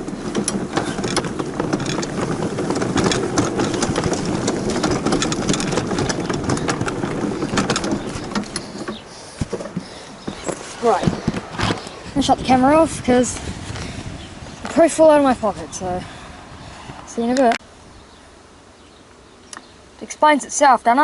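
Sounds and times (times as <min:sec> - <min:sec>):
small engine running rattly: 0:00.0 - 0:10.0.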